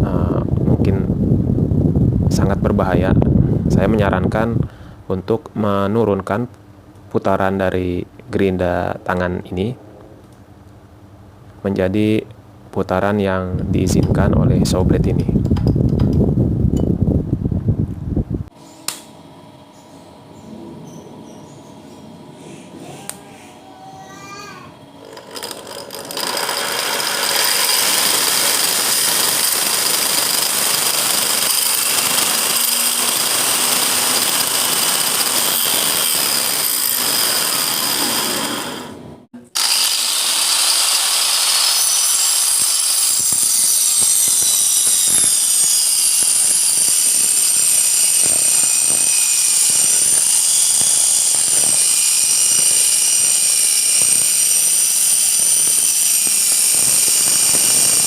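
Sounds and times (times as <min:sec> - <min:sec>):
circular saw blade whining: 0:24.0 - 0:58.0.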